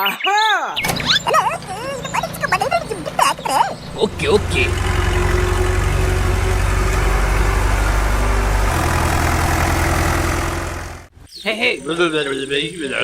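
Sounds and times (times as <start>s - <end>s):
engine running with pulsing note: 0.8s - 11.1s.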